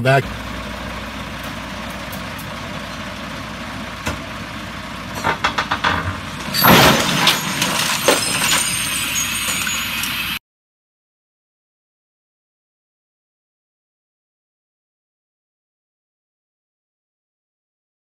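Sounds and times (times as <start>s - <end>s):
vehicle engine: 0.0s - 10.4s
clattering and rattling: 1.2s - 9.7s
run of knocks: 3.5s - 8.3s
loud crash: 5.0s - 9.8s.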